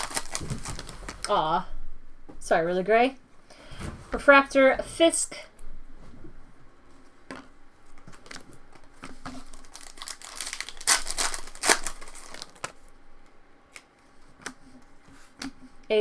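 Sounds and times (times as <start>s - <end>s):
foil wrapper tearing and crinkling: 0.0s - 1.4s, 8.0s - 12.9s.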